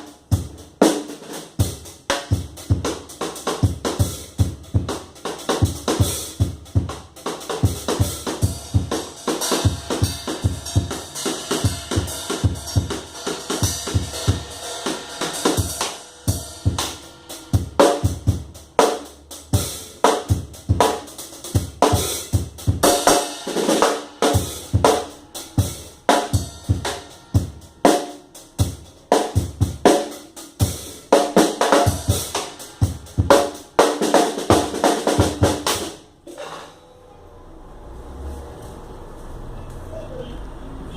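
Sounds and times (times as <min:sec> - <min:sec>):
drum kit fast groove: 0:00.0 - 0:36.6
cymbals ringing: 0:07.2 - 0:38.4.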